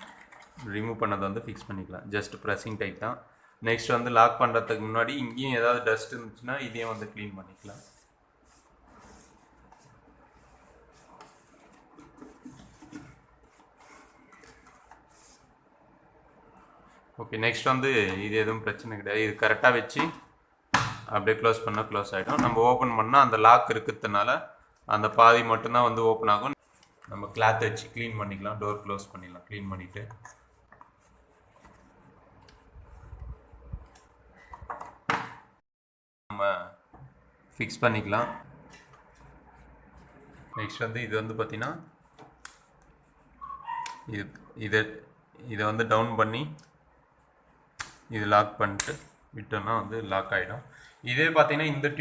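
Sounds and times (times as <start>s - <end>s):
faint rubbing strokes: 6.7s - 15.6s
handling noises and light knocks: 10.9s - 15.1s, 19.9s - 22.7s.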